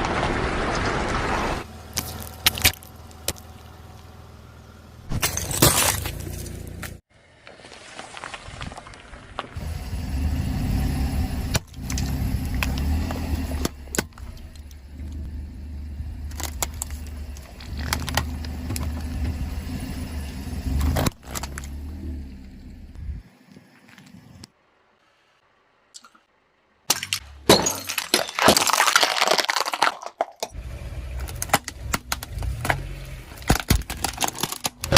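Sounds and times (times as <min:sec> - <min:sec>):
objects cracking under tyres: 0:00.0 - 0:04.2, 0:05.1 - 0:09.6, 0:16.2 - 0:19.4, 0:20.7 - 0:22.4, 0:26.9 - 0:34.9
car rolling with low rumble: 0:00.1 - 0:07.6, 0:08.7 - 0:24.5, 0:30.5 - 0:34.9.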